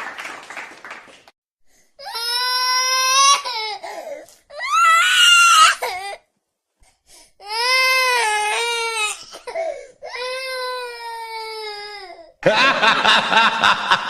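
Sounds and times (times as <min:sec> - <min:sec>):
baby crying: 0:02.0 - 0:06.2, 0:07.4 - 0:12.4.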